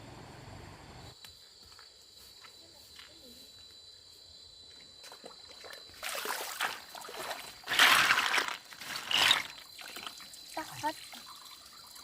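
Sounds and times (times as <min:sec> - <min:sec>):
water splashing and sloshing: 0:05.0 - 0:12.0.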